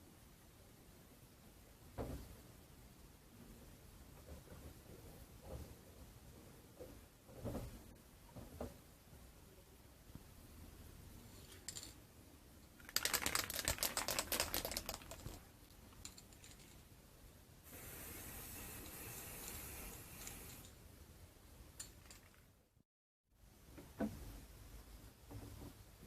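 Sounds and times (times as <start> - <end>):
steady hiss: 0.0 - 22.5
rapid clicks or rattles: 12.8 - 16.9, 21.8 - 22.5.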